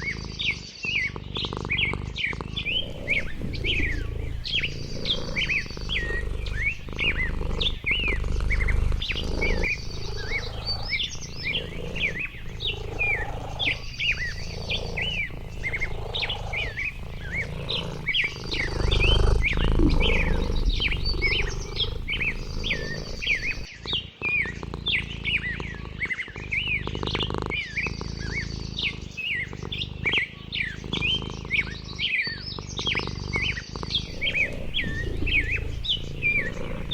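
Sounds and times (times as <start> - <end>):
songbirds chirping: 0.0 - 36.9
high buzzy bird trill: 2.6 - 23.7.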